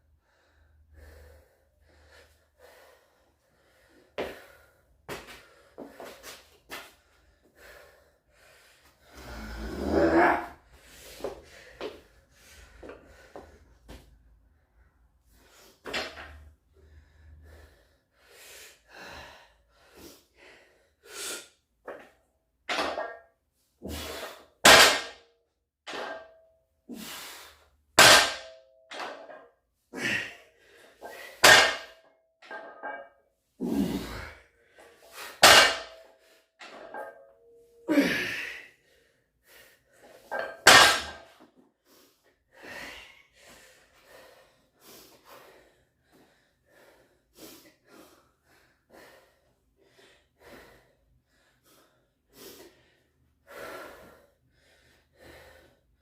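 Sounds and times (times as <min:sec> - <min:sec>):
forceful breaths and grunts: 0:07.0 - 0:14.3, 0:33.5 - 0:37.2.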